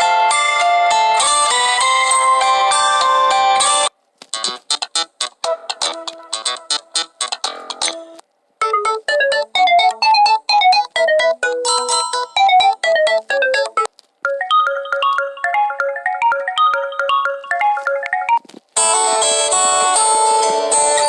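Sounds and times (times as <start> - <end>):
phone ringtones: 8.6 - 19.4.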